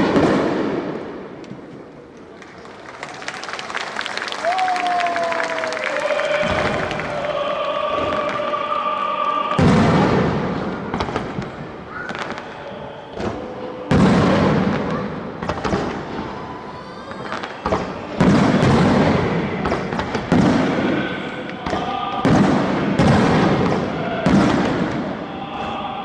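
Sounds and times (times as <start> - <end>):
fireworks booming: 0.0 - 1.8, 6.2 - 8.6, 9.5 - 12.6, 13.2 - 16.3, 17.2 - 25.8
fireworks crackling: 0.0 - 12.7.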